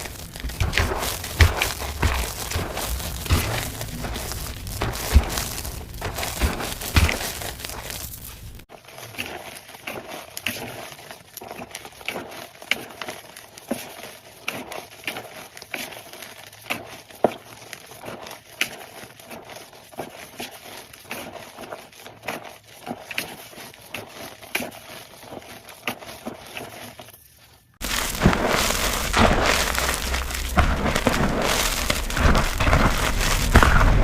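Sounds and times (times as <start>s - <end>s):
sharp crack: 0.0s - 8.6s, 27.8s - 34.0s
chalk crushing crackles: 0.0s - 34.0s.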